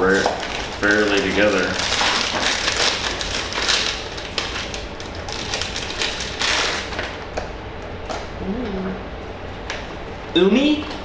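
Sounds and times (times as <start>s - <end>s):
packaging crinkling and tearing: 0.0s - 7.2s.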